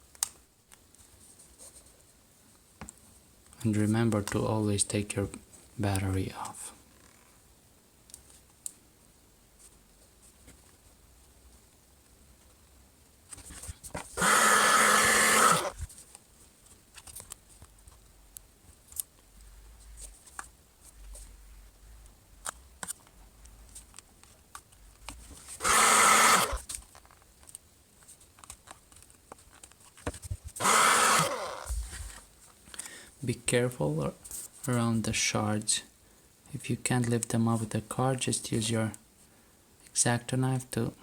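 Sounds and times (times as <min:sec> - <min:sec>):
hot-air blower: 0:14.2 - 0:15.8, 0:25.6 - 0:26.7, 0:30.6 - 0:32.2.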